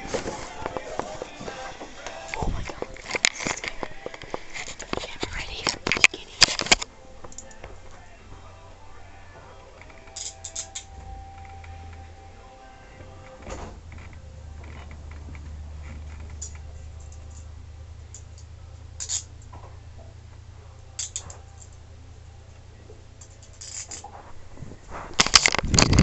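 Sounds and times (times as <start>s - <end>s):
short clicks and rustles: 0.0s - 8.0s, 25.0s - 26.0s
steady low hum: 0.0s - 26.0s.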